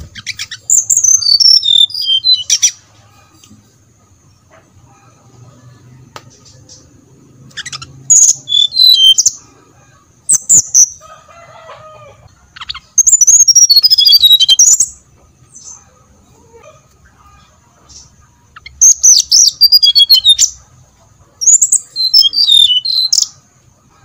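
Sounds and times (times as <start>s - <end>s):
bird song whistled notes: 0.0s - 2.8s, 7.5s - 9.4s, 12.6s - 15.8s, 18.6s - 20.6s, 21.4s - 23.4s.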